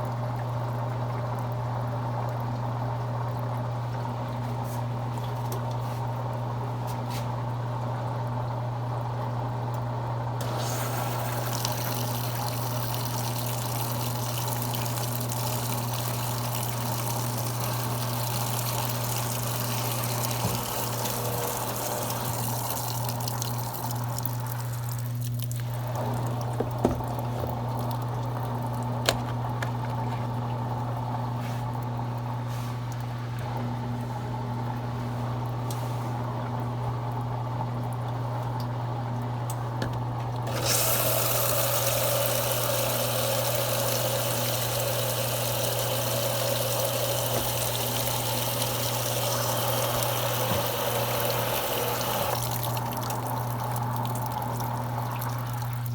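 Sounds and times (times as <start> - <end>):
washing machine humming: 0.0 - 55.9.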